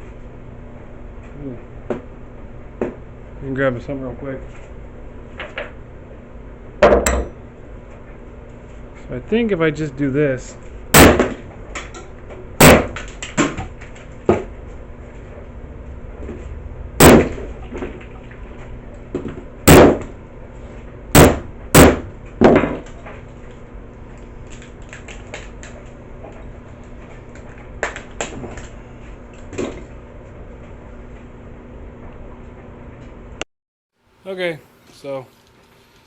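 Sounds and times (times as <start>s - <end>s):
hard sharp blows: 10.9s - 11.5s, 12.6s - 13.7s, 17.0s - 18.0s, 19.6s - 20.2s, 21.1s - 22.8s.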